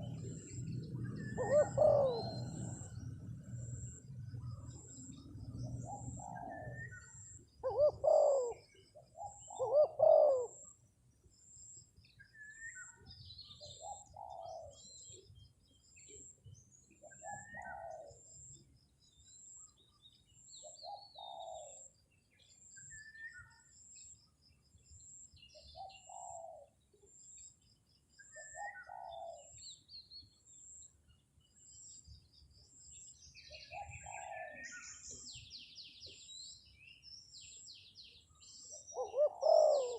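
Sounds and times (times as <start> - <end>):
dove cooing: 0.0 - 3.9, 4.5 - 10.8, 13.6 - 15.1, 17.0 - 18.4, 20.8 - 21.8, 25.8 - 26.8, 28.3 - 29.6, 33.5 - 35.1, 38.8 - 39.9
small birds chirping: 0.0 - 39.9.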